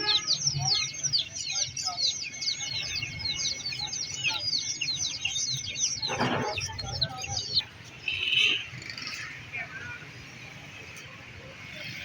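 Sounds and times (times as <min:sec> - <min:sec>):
small birds chirping: 0:00.0 - 0:09.5.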